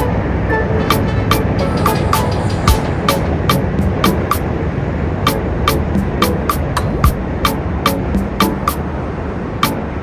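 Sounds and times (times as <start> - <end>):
sharp percussion hits: 0.0 - 4.6.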